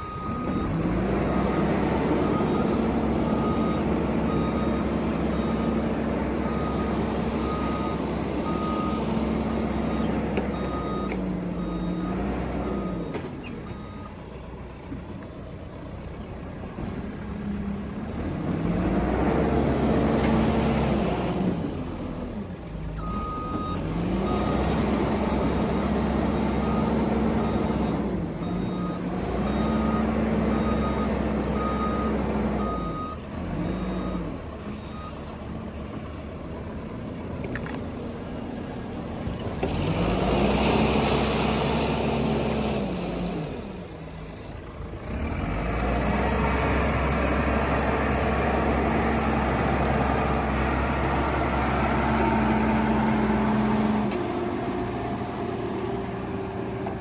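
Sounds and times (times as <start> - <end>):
reversing alarm beeping: 0.0 - 14.1, 23.0 - 35.2
diesel engine revving: 0.0 - 57.0.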